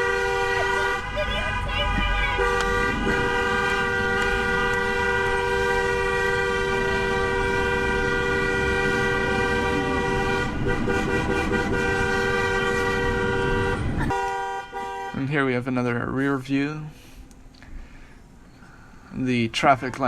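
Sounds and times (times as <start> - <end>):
vehicle horn blaring: 0.0 - 15.6
vehicles honking: 0.0 - 17.0
traffic rumble: 0.0 - 20.0.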